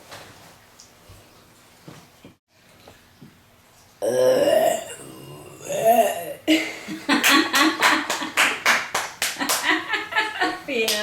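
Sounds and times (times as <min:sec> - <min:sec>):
person burping: 0:04.0 - 0:06.7.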